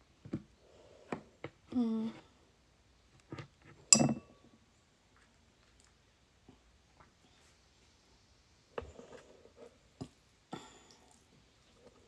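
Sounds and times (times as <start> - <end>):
person humming mm: 1.7 - 2.3
tableware clinking: 3.9 - 4.3.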